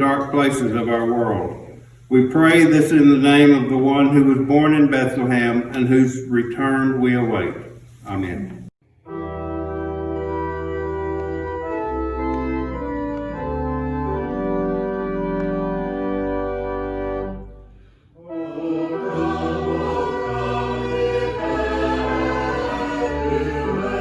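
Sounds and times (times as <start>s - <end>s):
organ playing slow chords: 0.0s - 8.1s, 8.8s - 24.0s
voices singing over music: 18.2s - 24.0s.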